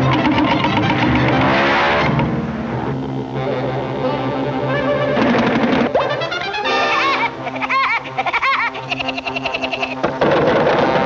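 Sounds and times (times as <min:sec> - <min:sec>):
orchestral cartoon music with brass: 0:00.0 - 0:07.5.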